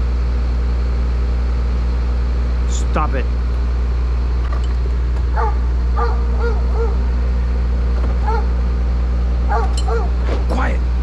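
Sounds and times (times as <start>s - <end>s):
low engine hum: 0.0s - 11.0s
dog yipping: 5.3s - 7.0s, 8.2s - 8.6s, 9.5s - 10.2s.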